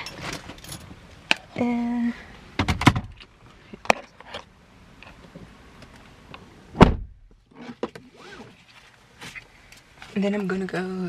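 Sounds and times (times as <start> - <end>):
car door shutting: 6.7 - 8.5.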